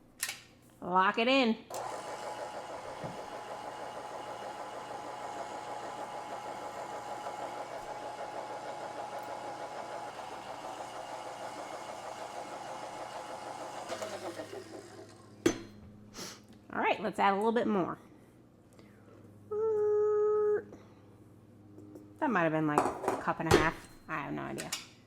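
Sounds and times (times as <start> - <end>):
stand mixer motor running: 1.8 - 15.4.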